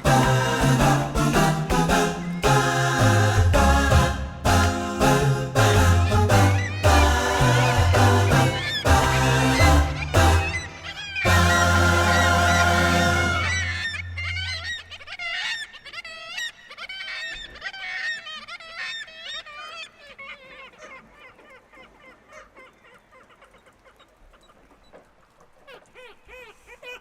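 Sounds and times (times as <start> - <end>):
held music chord: 0.0 - 14.2
seagulls squawking: 0.0 - 23.8.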